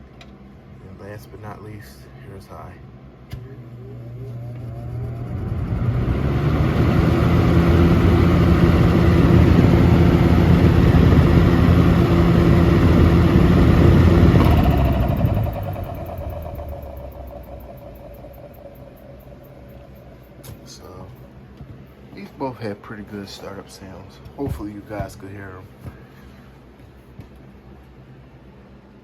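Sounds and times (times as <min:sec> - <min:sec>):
fan air rushing: 0:00.0 - 0:28.0
box fan motor hum: 0:02.6 - 0:22.6.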